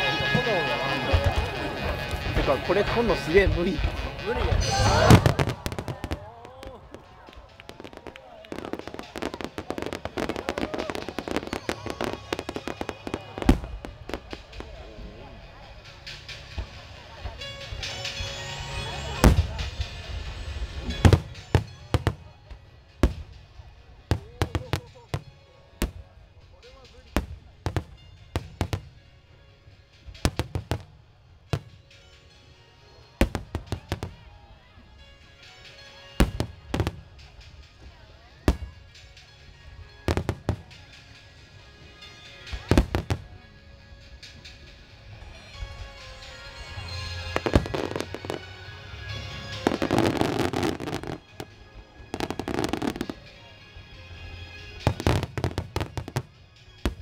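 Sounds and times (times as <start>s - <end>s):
firework crackling: 0.0s - 26.2s, 46.2s - 57.0s
music: 0.0s - 57.0s
firework bangs: 1.0s - 15.4s, 49.5s - 53.3s.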